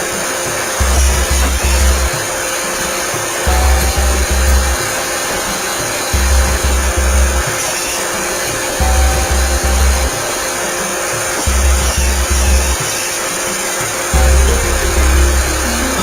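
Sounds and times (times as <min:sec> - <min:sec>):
low bass beat: 0:00.8 - 0:02.1, 0:03.5 - 0:04.8, 0:06.2 - 0:07.4, 0:08.8 - 0:10.1, 0:14.2 - 0:16.0.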